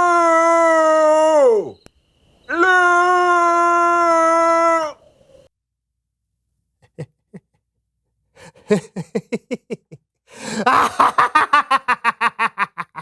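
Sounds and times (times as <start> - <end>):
person laughing: 6.8 - 7.6, 8.4 - 13.0.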